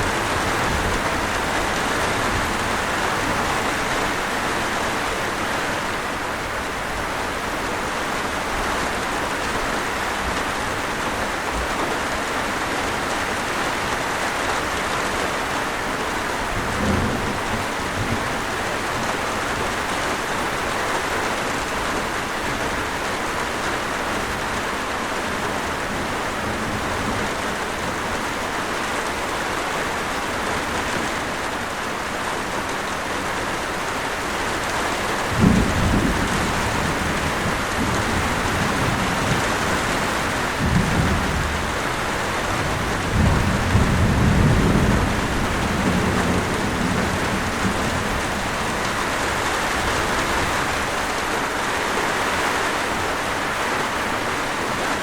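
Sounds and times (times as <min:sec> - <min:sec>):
thunder rumbles: 0:00.0 - 0:04.4, 0:16.5 - 0:20.0, 0:34.7 - 0:51.0
steady rain falling: 0:00.0 - 0:55.0.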